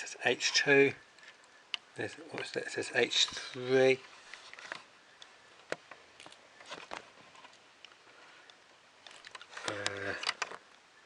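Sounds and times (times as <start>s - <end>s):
light clicks of plastic parts: 4.3s - 10.8s.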